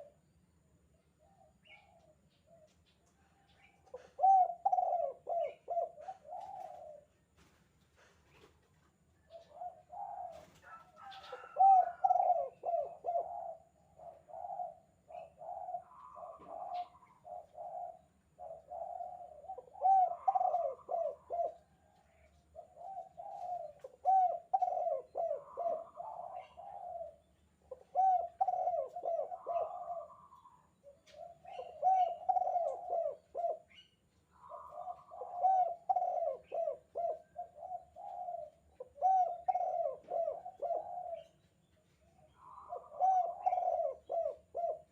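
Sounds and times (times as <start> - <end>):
dove cooing: 0.0 - 0.3, 1.1 - 8.5, 9.2 - 44.9.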